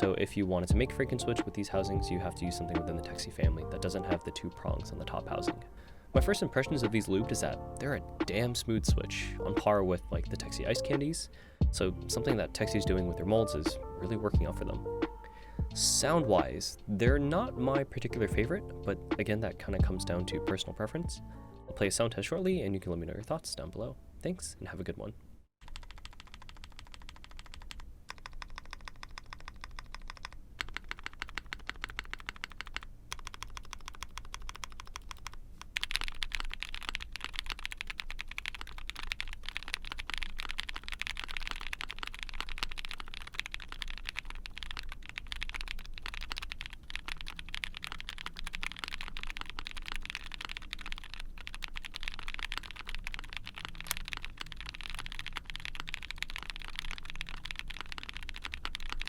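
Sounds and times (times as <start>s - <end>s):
mechanical keyboard typing: 25.6s - 59.0s.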